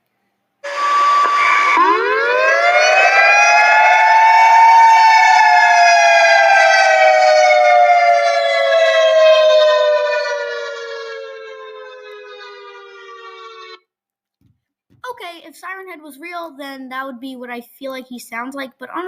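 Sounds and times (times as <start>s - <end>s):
siren winding up and down: 0.6s - 13.8s.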